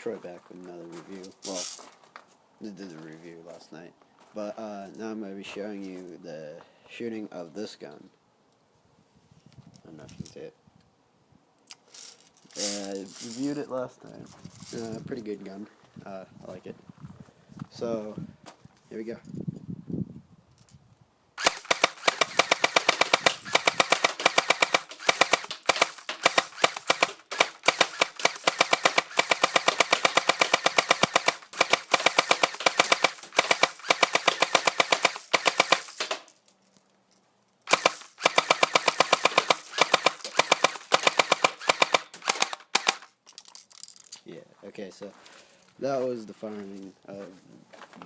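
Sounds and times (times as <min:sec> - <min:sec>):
airsoft rifle firing full auto: 0:21.4 - 0:36.2, 0:37.7 - 0:43.1.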